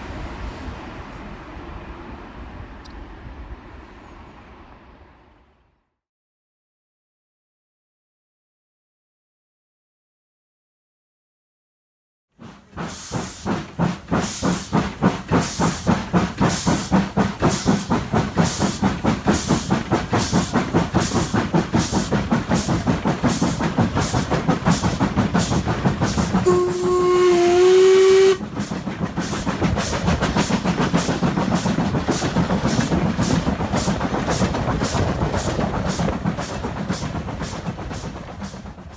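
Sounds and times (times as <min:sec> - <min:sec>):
steam locomotive exhaust beats: 0:12.4 - 0:38.9
steam whistle: 0:26.4 - 0:28.6.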